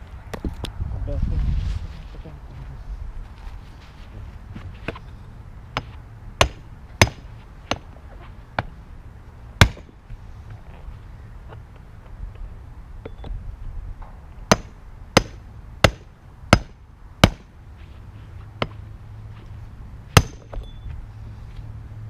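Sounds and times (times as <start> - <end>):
hammer striking metal: 20.2 - 20.8.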